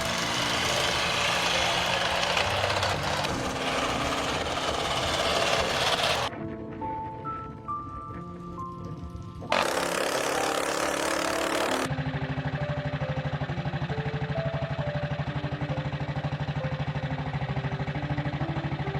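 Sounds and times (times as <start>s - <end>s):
motorcycle engine idling: 10.4s - 18.9s.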